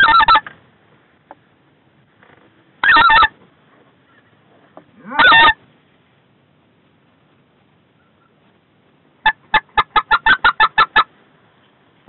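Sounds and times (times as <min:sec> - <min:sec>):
goose call high yelping: 0:00.0 - 0:00.5, 0:02.8 - 0:03.4, 0:05.0 - 0:05.6, 0:09.2 - 0:11.1.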